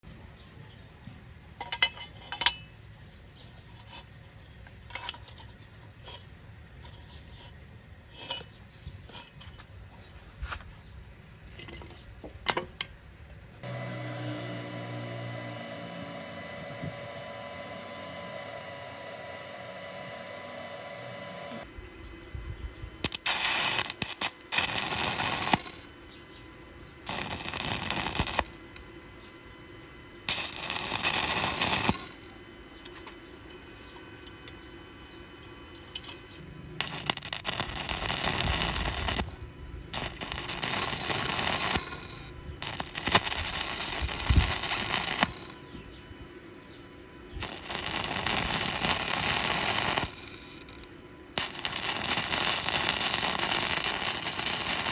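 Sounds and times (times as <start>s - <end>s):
steady multi-tone hum: 0.0s - 54.9s
welding arc crackling: 23.0s - 26.1s, 27.0s - 29.2s, 30.3s - 33.6s, 35.4s - 45.7s, 47.4s - 54.9s.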